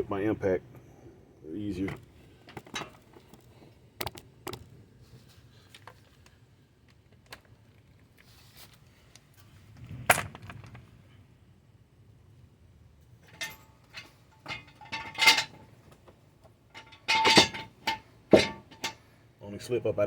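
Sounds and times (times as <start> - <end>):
light metallic clinks: 13.2 - 15.6
sharp metal clank: 16.8 - 19.0.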